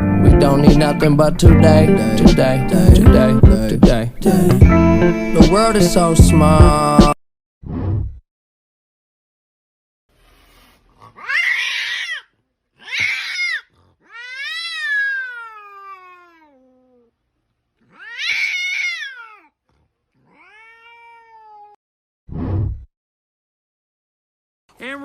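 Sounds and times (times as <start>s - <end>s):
cat meowing loudly: 11.2s - 16.8s, 17.9s - 19.5s, 20.3s - 21.8s.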